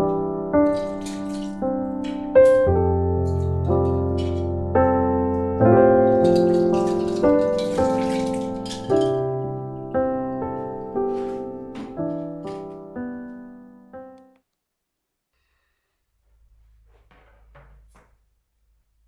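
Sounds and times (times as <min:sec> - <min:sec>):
gentle piano music: 0:00.0 - 0:14.3.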